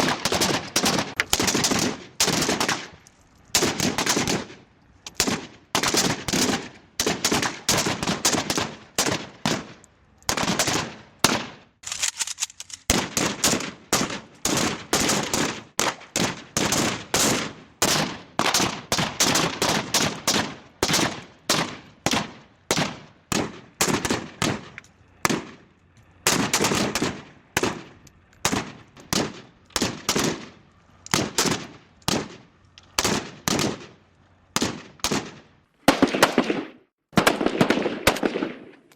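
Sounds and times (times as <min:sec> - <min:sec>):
rapid gunshot bursts: 0:00.0 - 0:02.9, 0:03.6 - 0:04.6, 0:12.9 - 0:25.6.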